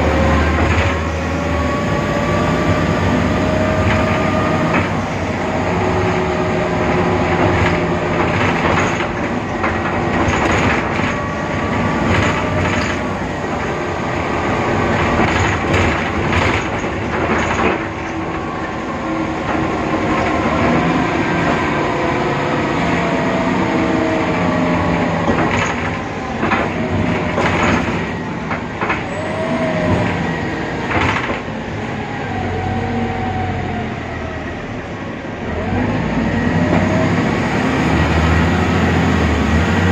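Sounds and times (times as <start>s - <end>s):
road noise: 0.0s - 39.9s
bus gearbox whining: 0.1s - 31.8s
knocks and rattles: 6.9s - 13.8s, 14.7s - 21.8s, 25.0s - 29.1s, 30.8s - 31.5s.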